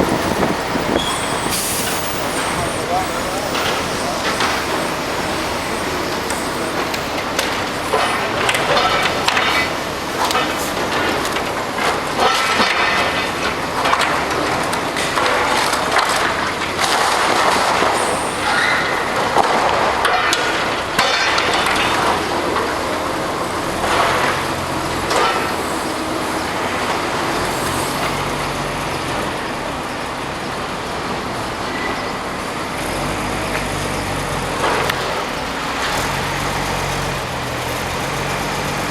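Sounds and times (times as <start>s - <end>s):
heavy machinery running: 0.0s - 38.9s
masonry crunching and clattering: 2.0s - 29.5s.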